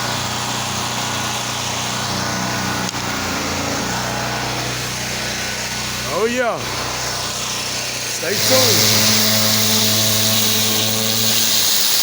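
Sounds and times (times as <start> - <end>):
pressure washer engine running: 0.0 - 12.0
water spraying hiss: 6.7 - 12.0.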